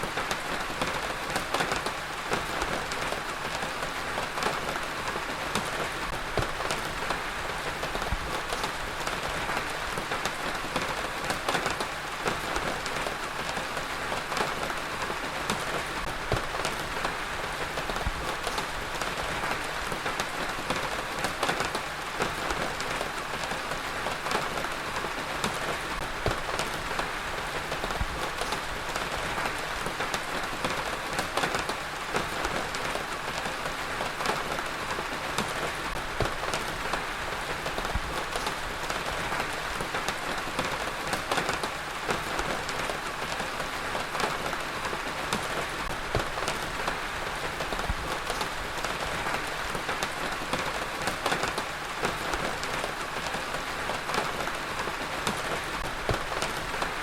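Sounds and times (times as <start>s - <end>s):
heavy rain pattering: 0.0s - 57.0s.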